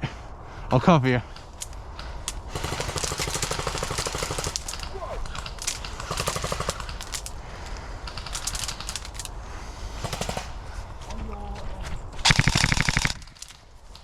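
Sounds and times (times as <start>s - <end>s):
airsoft gun firing bursts: 2.5s - 7.3s, 9.9s - 10.7s, 12.2s - 13.4s.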